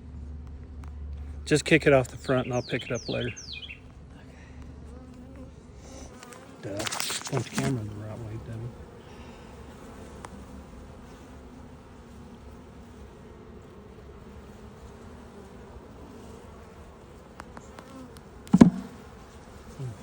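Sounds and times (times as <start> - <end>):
honeybees buzzing: 1.4 - 20.0
sharp knock: 18.5 - 19.0.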